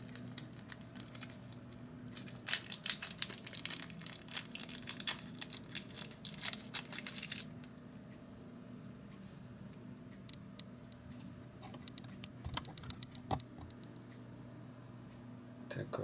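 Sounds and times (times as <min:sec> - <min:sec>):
packaging crinkling and tearing: 0:00.0 - 0:07.6.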